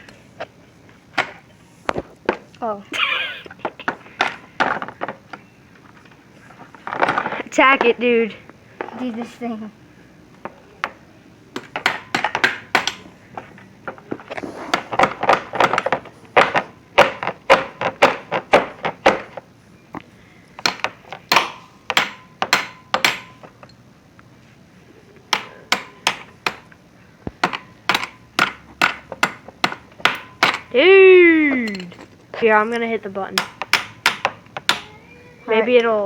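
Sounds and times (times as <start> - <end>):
hammer striking metal: 11.6 - 13.1, 20.6 - 23.5, 25.3 - 26.7, 27.4 - 30.8, 33.4 - 35.0.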